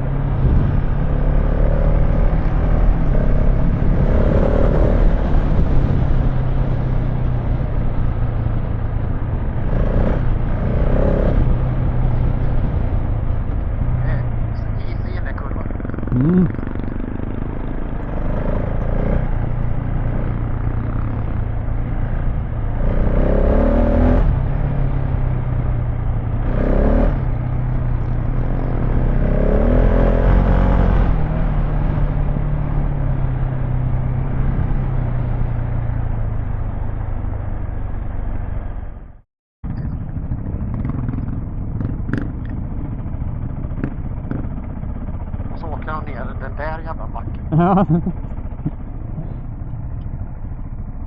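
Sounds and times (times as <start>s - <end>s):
motorcycle engine revving: 0.0s - 51.0s
motorcycle clattering: 39.7s - 45.5s.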